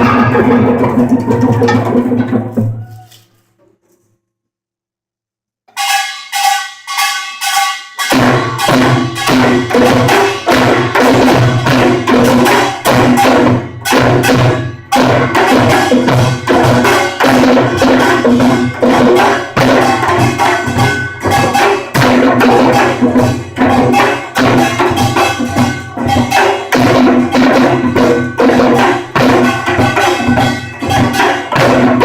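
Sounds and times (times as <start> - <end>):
gongs and drums driving rhythm: 0.0 - 3.1, 5.8 - 32.0.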